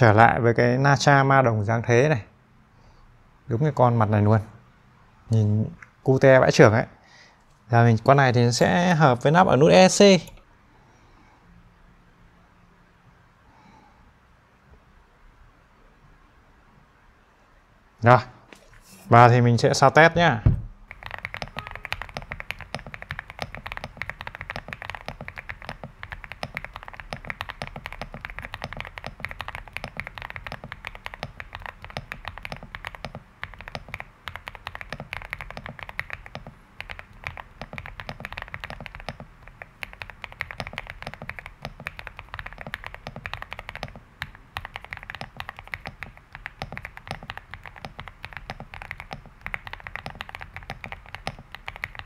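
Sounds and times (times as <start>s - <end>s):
fast typing on mechanical keyboard: 20.8s - 52.0s.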